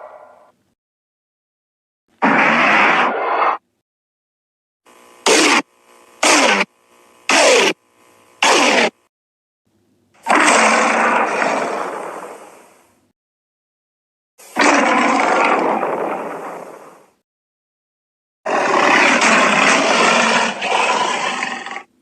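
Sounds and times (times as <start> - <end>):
giant ape monster calls: 5.2 - 6.7, 7.3 - 7.8, 8.4 - 8.9, 10.2 - 12.4, 14.5 - 16.4, 18.5 - 21.9.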